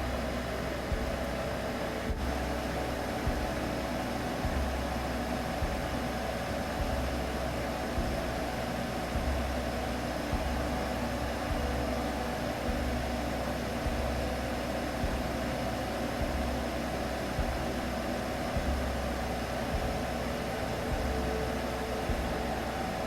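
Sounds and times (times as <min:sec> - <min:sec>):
low rumble: 0:00.0 - 0:23.0.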